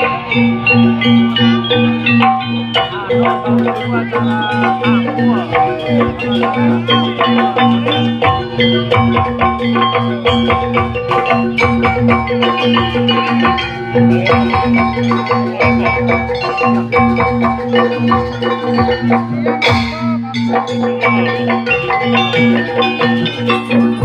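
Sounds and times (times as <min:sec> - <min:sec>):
drums: 0:00.0 - 0:24.0
metallophones playing fast notes: 0:00.0 - 0:24.0.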